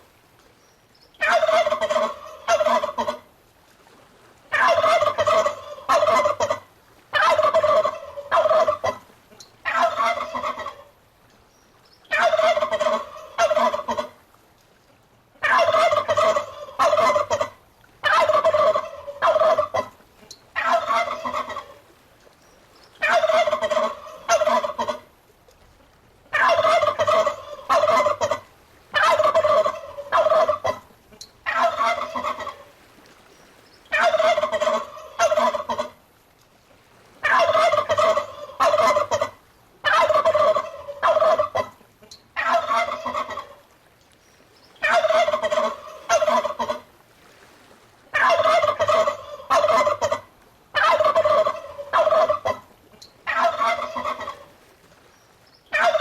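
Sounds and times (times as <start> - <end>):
turkey gobbling: 1.2 - 3.2, 4.5 - 10.9, 12.1 - 14.2, 15.4 - 19.9, 20.6 - 21.8, 23.0 - 25.0, 26.3 - 32.7, 33.9 - 36.0, 37.2 - 43.6, 44.8 - 46.9, 48.1 - 54.5, 55.7 - 56.0.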